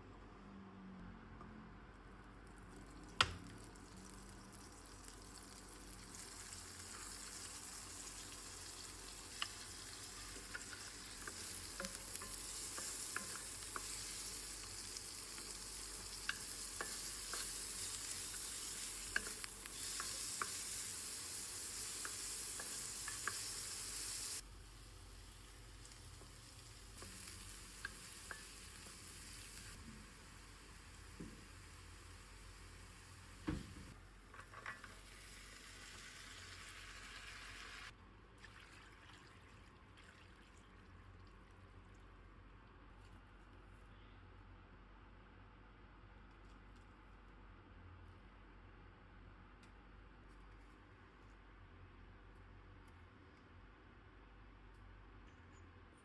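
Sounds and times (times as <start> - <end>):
food sizzling in a frying pan: 3.4 - 37.9.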